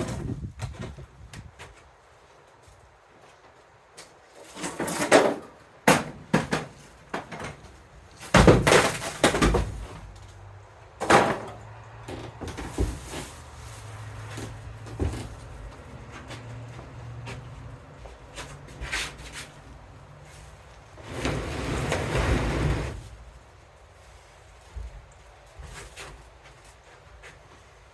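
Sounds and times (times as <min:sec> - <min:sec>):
hard objects knocking and scraping: 0:04.6 - 0:10.2.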